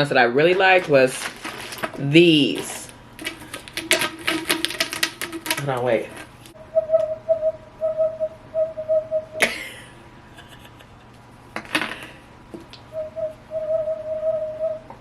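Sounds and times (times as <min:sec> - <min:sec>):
fidget toy pulsing whistle tone: 0:06.6 - 0:09.4, 0:13.0 - 0:14.9.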